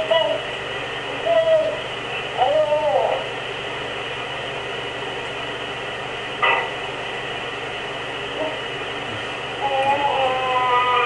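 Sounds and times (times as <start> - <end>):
muffled vocal noise from sleeper: 9.0 - 11.0.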